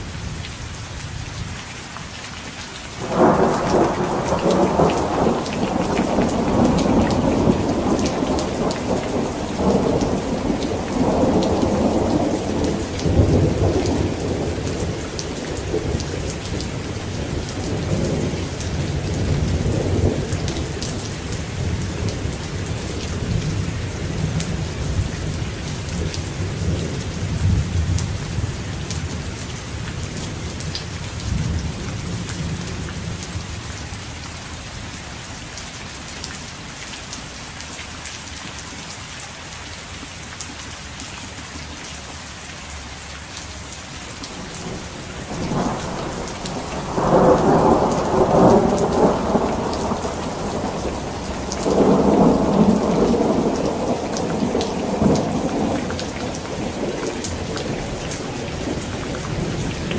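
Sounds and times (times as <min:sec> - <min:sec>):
steady rain falling: 0:00.0 - 0:59.9
thunder rumbling: 0:03.0 - 0:29.2, 0:44.6 - 0:59.9.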